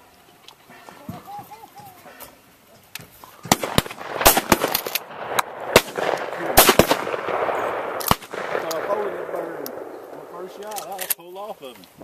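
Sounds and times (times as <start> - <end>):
shotgun shots: 3.5 - 11.0.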